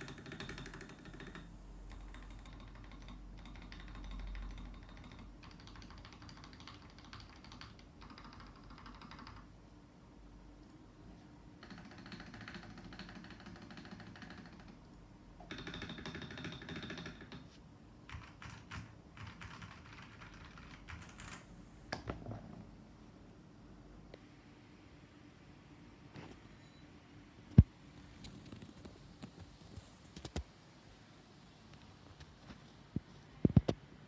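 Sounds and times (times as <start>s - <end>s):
typing on mechanical keyboard: 0.0s - 9.5s, 11.6s - 17.5s, 18.1s - 22.1s.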